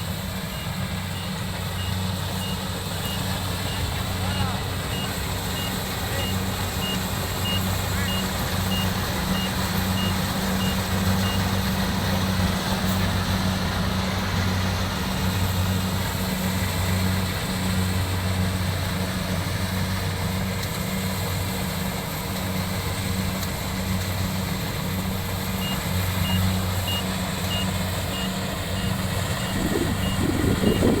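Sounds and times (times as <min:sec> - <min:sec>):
combine harvester engine drone: 0:00.0 - 0:31.0
high warning beeper: 0:25.6 - 0:31.0.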